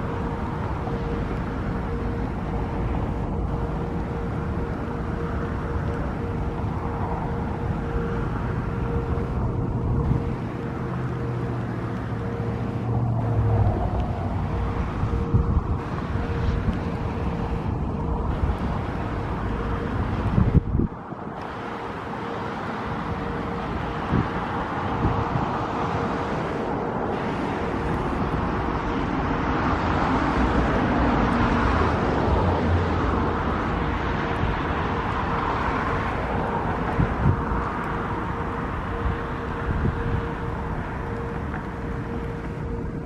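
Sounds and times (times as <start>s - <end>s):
vehicle noise: 0.0s - 43.0s
vehicle passing: 0.0s - 43.0s
wind buffeting microphone: 0.0s - 43.0s.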